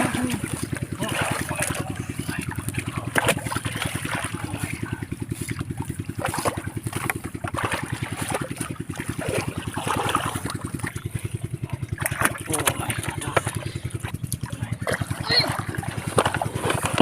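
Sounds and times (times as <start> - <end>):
small engine running: 0.0 - 17.0
water splashes: 0.0 - 17.0
water trickling: 0.0 - 17.0.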